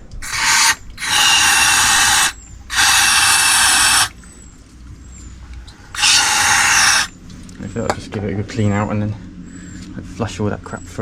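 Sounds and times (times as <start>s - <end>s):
aerosol spray hissing: 0.2s - 4.1s, 6.0s - 7.1s.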